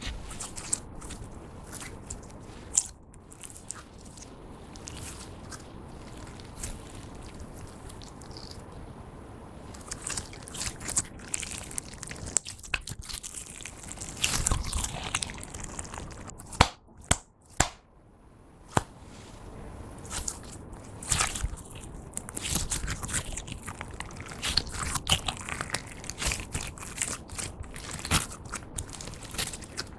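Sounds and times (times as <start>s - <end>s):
slime squishing and popping: 9.8s - 17.8s, 21.0s - 29.9s
sharp slime snaps: 16.5s - 17.8s, 18.7s - 18.9s.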